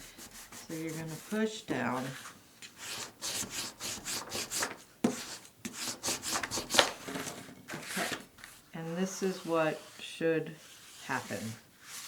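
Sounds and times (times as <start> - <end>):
hands rubbing on cardstock: 0.0 - 7.0.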